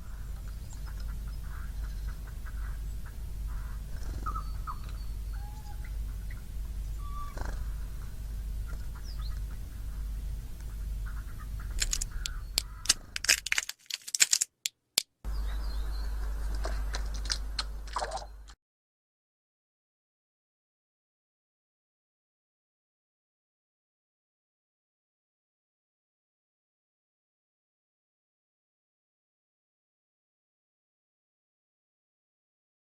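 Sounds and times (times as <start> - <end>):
bird mewing calls: 0.1 - 10.1, 10.7 - 13.2
sharp clicks and taps: 11.8 - 15.1.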